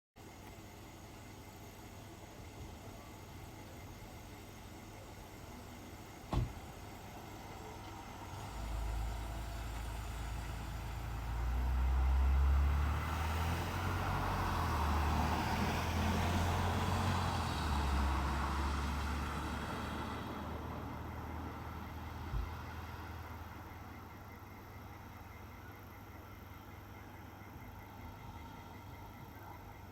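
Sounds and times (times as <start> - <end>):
vehicle engine rumble: 2.0 - 29.9.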